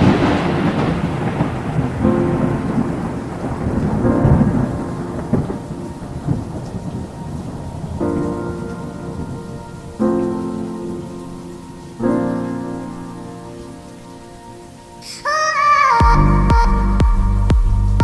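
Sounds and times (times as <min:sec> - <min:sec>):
rolling thunder rumble: 0:00.0 - 0:14.0
steady rain: 0:00.0 - 0:18.0
sustained background music chords: 0:16.0 - 0:18.0.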